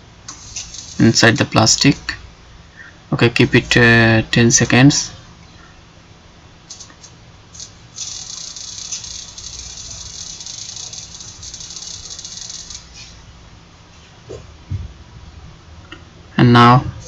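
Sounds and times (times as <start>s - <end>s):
gas hissing: 0.2s - 3.0s, 6.6s - 13.3s.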